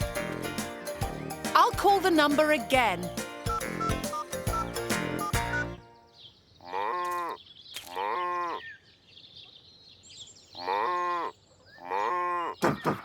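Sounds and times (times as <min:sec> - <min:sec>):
farm animal calling: 0:00.0 - 0:06.0, 0:06.6 - 0:08.8, 0:10.5 - 0:12.6
music jingle: 0:00.0 - 0:06.2.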